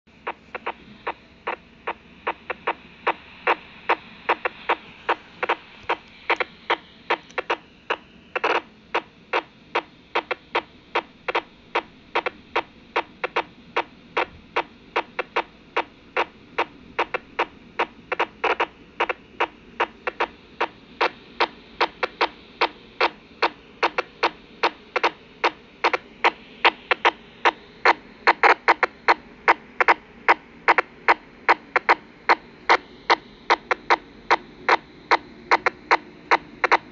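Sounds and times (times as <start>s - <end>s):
radio clicking pulses: 0.1s - 36.9s
static hiss: 0.1s - 36.9s.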